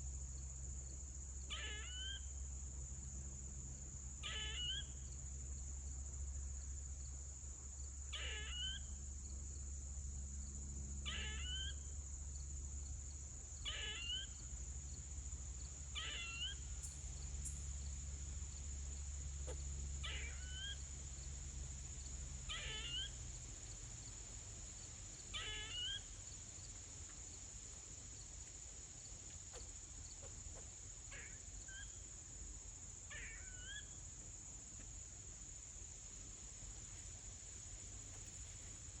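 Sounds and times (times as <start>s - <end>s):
high insect drone: 0.0s - 39.0s
squirrel screeching calls: 1.5s - 2.3s, 4.2s - 5.0s, 8.1s - 8.9s, 11.0s - 11.8s, 13.6s - 14.4s, 15.9s - 16.7s, 19.4s - 20.8s, 22.5s - 23.2s, 25.3s - 26.1s, 31.1s - 32.0s, 33.1s - 34.0s.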